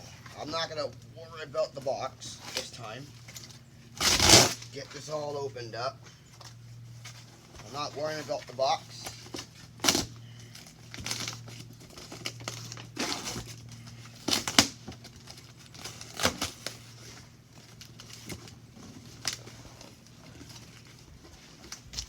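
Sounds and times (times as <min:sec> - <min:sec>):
cardboard and plastic wrap tearing: 0:04.0 - 0:05.1, 0:07.7 - 0:22.0.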